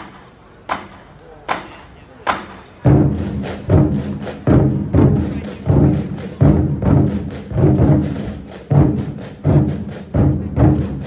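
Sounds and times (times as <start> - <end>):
large drums booming: 2.8 - 11.0.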